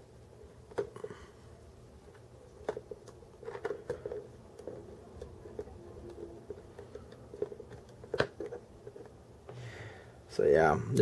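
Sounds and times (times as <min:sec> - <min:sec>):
plastic parts clicking and tapping: 0:02.1 - 0:09.2.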